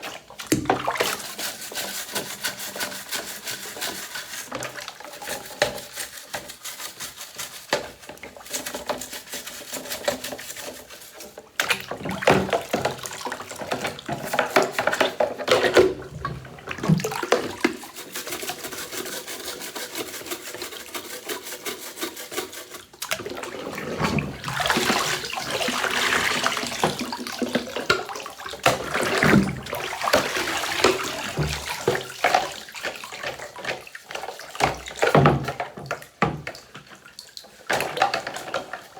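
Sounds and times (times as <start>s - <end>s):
water running and splashing: 0.0s - 38.9s
scrubbing parts by hand: 0.8s - 11.6s, 16.8s - 23.0s.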